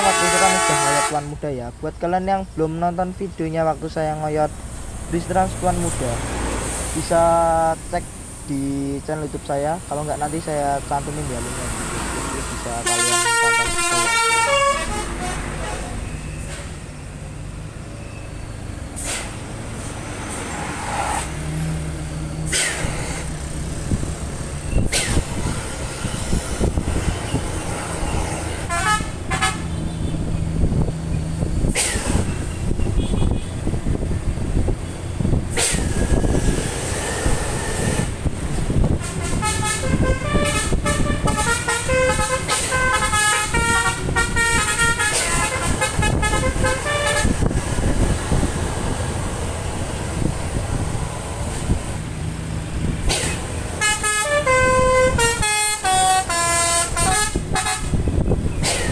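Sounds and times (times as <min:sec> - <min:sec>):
multi-trumpet air horn tune: 0:00.0 - 0:01.3, 0:12.8 - 0:16.0, 0:28.7 - 0:29.8, 0:39.0 - 0:47.4, 0:53.1 - 0:58.0
diesel buses idling and moving off: 0:00.0 - 0:58.9
sharp air hisses: 0:19.0 - 0:19.4, 0:22.5 - 0:23.2.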